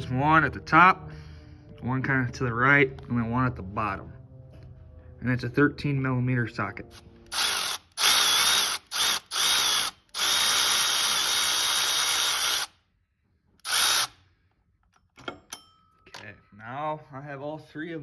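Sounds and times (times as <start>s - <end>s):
power tool motor whine: 7.0s - 12.7s, 13.6s - 14.2s.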